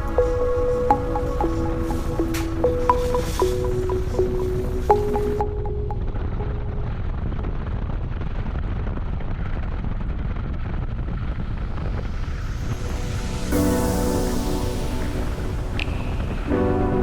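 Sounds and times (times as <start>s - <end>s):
background music: 0.0s - 7.0s, 12.3s - 17.0s.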